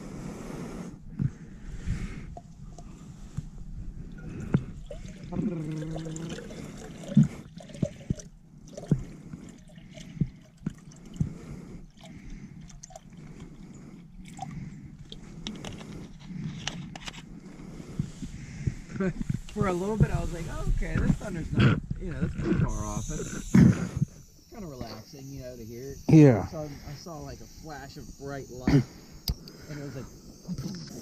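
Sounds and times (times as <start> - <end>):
water dripping and trickling: 4.2 - 11.3, 11.9 - 15.3.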